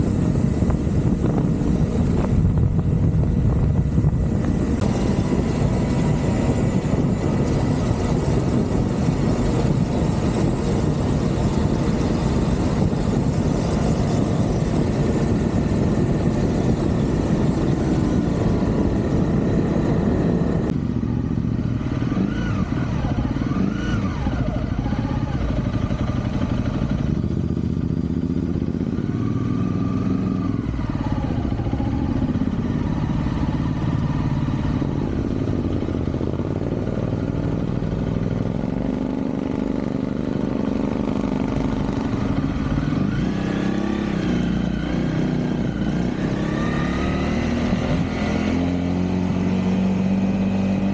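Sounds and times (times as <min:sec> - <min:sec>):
wind noise on microphone: 0:00.0 - 0:20.8
motorcycle engine running: 0:00.0 - 0:50.9.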